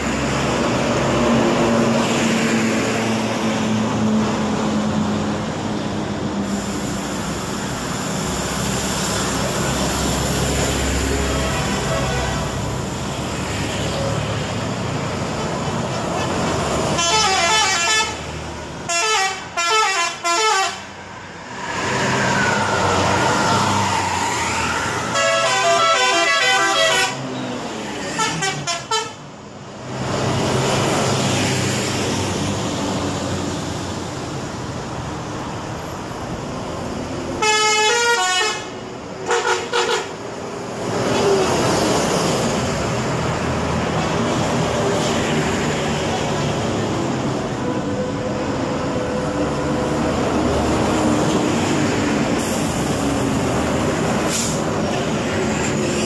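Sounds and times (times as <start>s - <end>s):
bus engines and road noise: 0.0s - 56.0s
multi-tone bus horns playing tunes: 11.2s - 12.6s, 15.3s - 21.0s, 25.0s - 27.3s, 28.1s - 29.2s, 37.4s - 40.2s.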